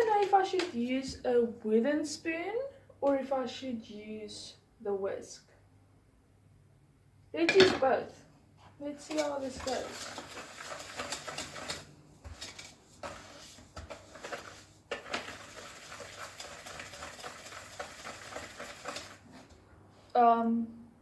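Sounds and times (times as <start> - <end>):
stirring and scraping in bowl: 8.6 - 19.6.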